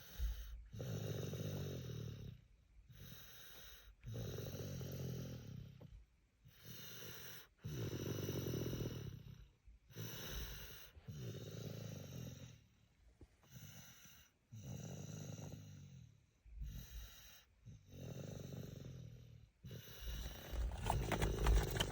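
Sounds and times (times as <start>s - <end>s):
toddler snoring: 0.0s - 2.4s, 3.0s - 5.9s, 6.6s - 12.6s, 13.6s - 16.0s.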